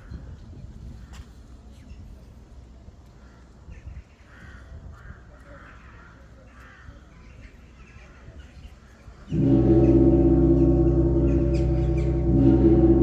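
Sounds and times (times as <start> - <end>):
low rumble: 9.3 - 13.0.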